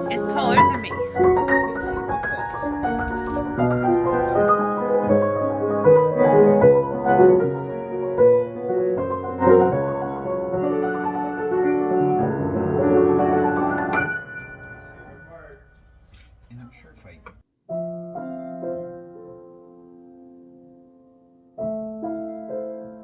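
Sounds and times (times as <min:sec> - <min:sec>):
piano music: 0:00.0 - 0:15.9, 0:17.7 - 0:23.0.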